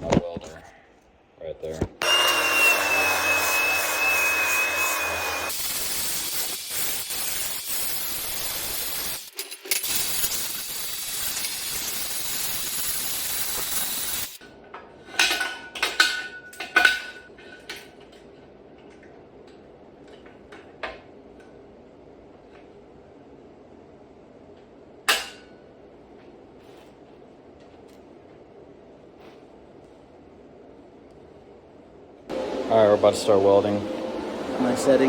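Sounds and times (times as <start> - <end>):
power tool hissing on metal: 2.0 - 14.4.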